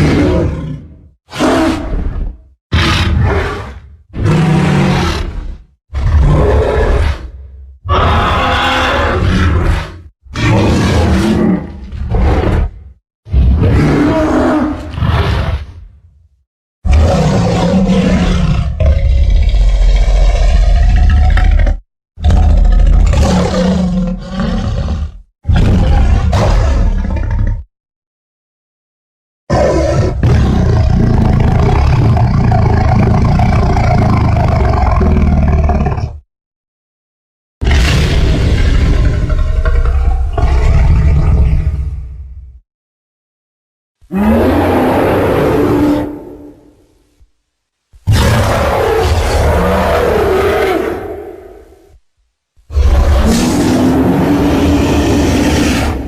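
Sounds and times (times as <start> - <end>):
monster roars: 0.0 - 15.8, 16.9 - 27.7, 37.6 - 42.1, 44.1 - 46.8, 48.1 - 51.7, 52.7 - 56.0.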